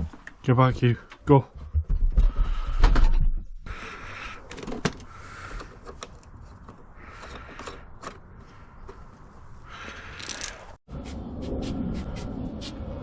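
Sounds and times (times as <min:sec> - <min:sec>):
plastic fitting clicks and scraping: 0:04.4 - 0:09.0.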